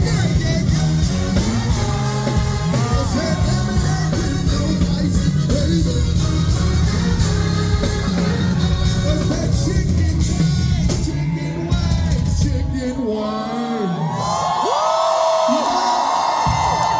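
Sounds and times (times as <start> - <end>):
drums and cymbals: 0.0 - 13.0
live soul-pop band: 0.0 - 13.1.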